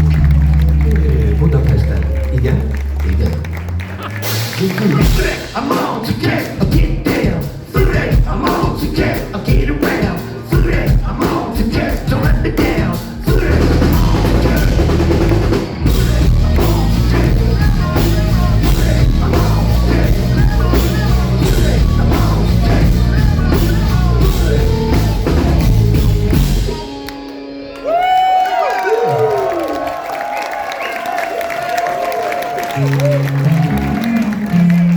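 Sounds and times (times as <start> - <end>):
live rock band playing: 3.5 - 28.6, 32.7 - 34.9
drum hits: 4.3 - 10.0, 10.6 - 26.9.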